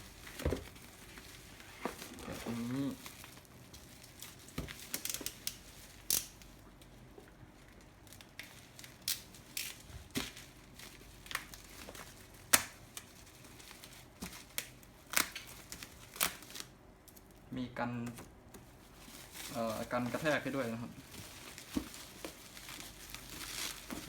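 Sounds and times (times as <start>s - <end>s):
box packing being unpacked: 0.0s - 6.3s, 18.9s - 24.0s.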